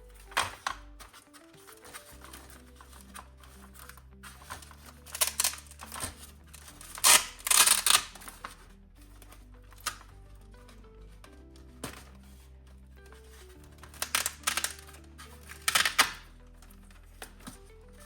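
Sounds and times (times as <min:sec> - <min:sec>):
background music with bass notes: 0:00.0 - 0:18.0
wires and plastic parts scraping: 0:00.0 - 0:18.0.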